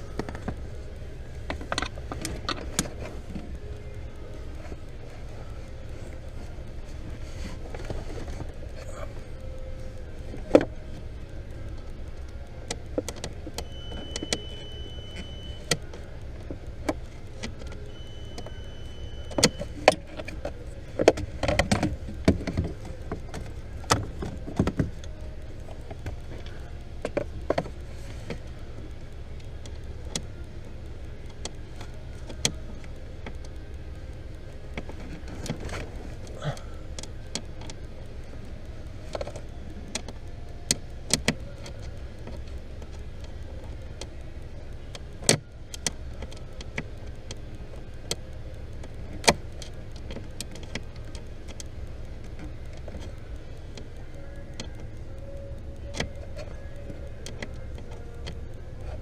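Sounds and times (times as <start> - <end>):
low hum: 0.0 - 59.0
short high beeps: 17.9 - 19.8.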